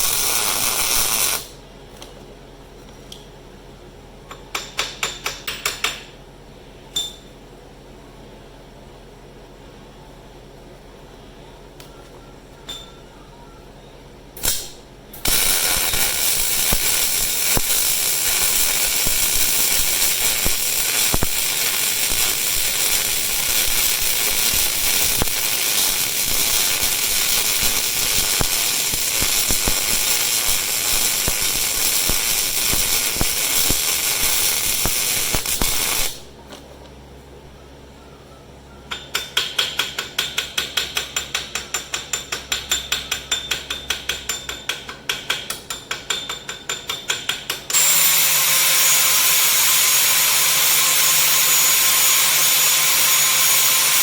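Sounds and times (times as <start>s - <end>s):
arc welding noise: 0.0s - 2.1s, 14.4s - 36.7s, 38.9s - 54.0s.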